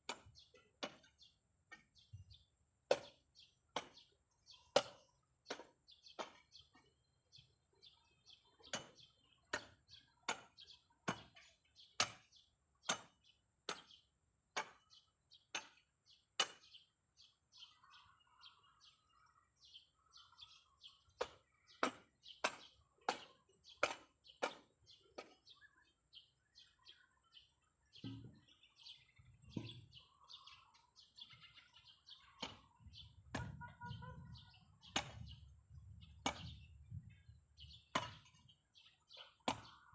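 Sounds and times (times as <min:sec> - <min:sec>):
small birds chirping: 0:00.0 - 0:39.9
sharp chopping strikes: 0:21.2 - 0:25.4, 0:34.8 - 0:35.3, 0:36.2 - 0:36.6, 0:37.9 - 0:38.4, 0:39.4 - 0:39.8.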